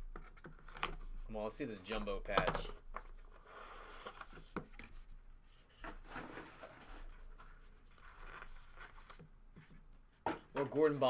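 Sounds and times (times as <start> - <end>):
trading cards and packaging rustling: 5.8 - 9.8.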